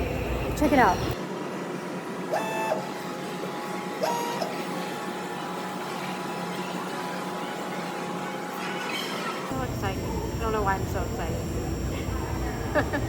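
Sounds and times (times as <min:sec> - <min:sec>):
vending machine whirring hum: 0:00.0 - 0:08.7, 0:09.3 - 0:13.0.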